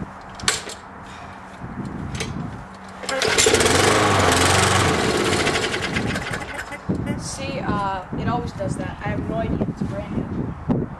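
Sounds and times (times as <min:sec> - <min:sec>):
lawn mower engine starting: 0:02.9 - 0:06.8.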